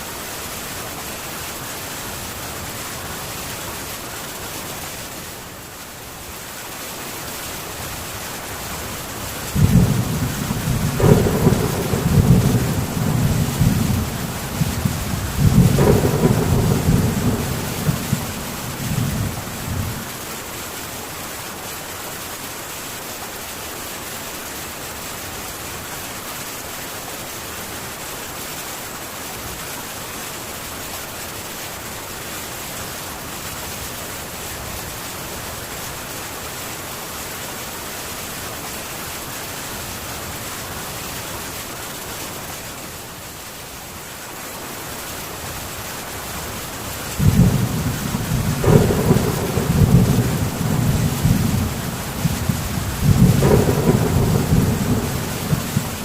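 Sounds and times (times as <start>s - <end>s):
heavy rain on a tin roof: 0.0s - 56.0s
low rumble of thunder: 9.5s - 20.2s, 47.2s - 56.0s.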